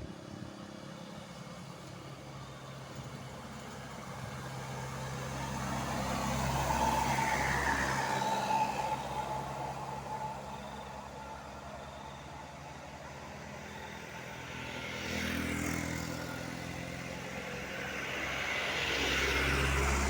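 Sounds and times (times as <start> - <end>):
vehicle engine passing by: 13.8 - 20.0.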